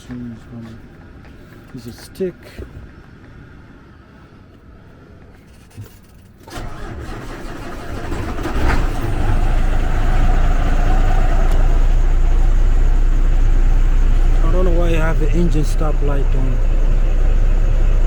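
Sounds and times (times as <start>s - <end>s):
diesel engine cranking and idling: 6.4s - 18.0s.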